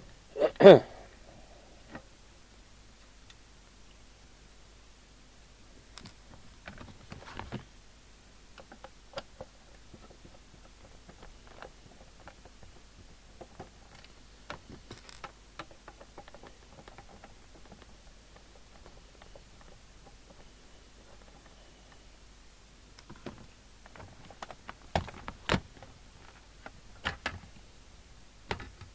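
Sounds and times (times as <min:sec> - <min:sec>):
radio set being handled: 0:08.6 - 0:22.0, 0:23.0 - 0:27.6.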